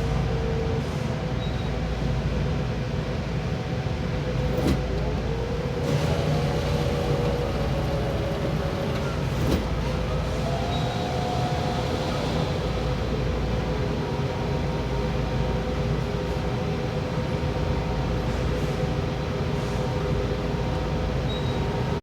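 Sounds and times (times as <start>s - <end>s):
printer humming: 5.0s - 22.0s.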